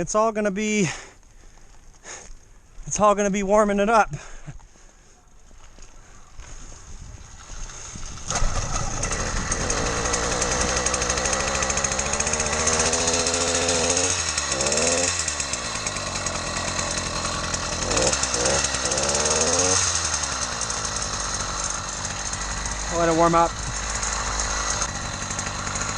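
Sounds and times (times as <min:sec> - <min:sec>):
small two-stroke engine revving: 0:07.2 - 0:25.9.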